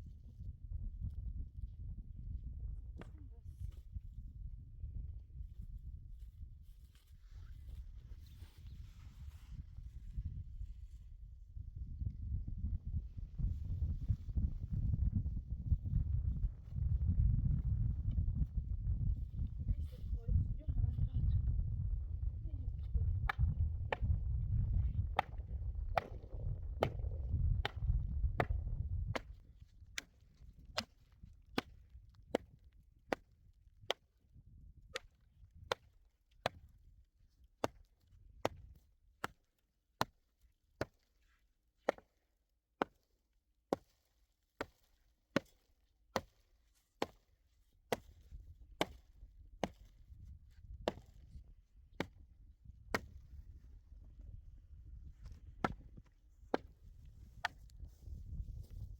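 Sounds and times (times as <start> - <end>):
low rumble: 9.6 - 29.6.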